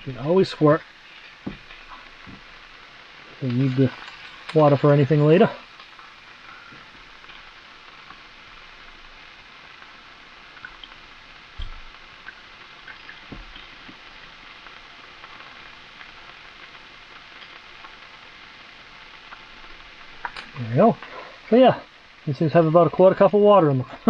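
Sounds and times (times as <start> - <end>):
food sizzling in a skillet: 0.0 - 24.0
dull knocks: 1.4 - 2.5.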